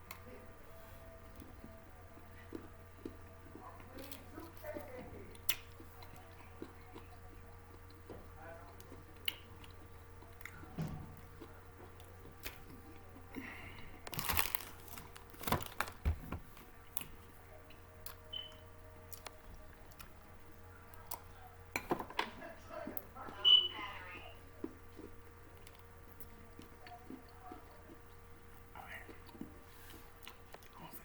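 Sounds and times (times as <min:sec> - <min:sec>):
crunchy snack chewing: 0:11.3 - 0:16.0.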